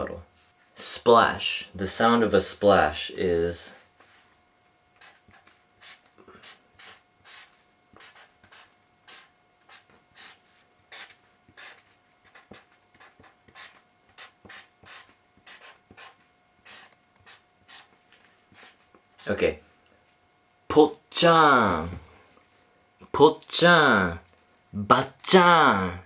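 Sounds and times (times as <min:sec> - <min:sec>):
pen writing on paper: 0:05.0 - 0:17.9, 0:18.5 - 0:18.8.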